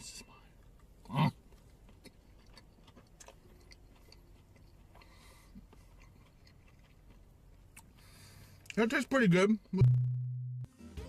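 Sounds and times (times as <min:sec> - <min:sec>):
person quietly chewing food: 0:00.3 - 0:08.8.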